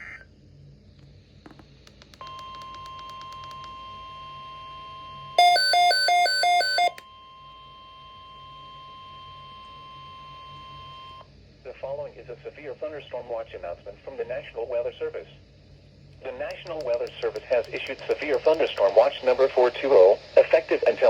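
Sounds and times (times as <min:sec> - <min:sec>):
steady high alarm tone: 0:02.2 - 0:11.3.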